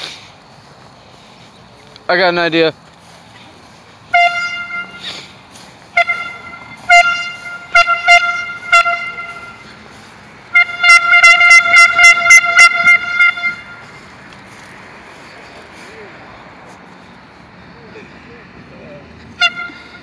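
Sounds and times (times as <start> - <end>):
air horn tooting: 4.0 - 14.1, 19.3 - 20.0.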